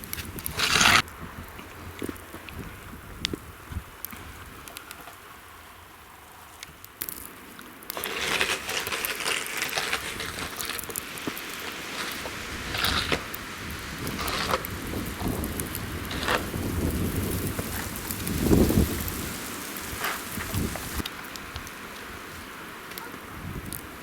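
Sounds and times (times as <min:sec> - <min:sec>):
blowing snow ticking: 0:07.0 - 0:22.6
blizzard wind rushing: 0:10.0 - 0:21.0.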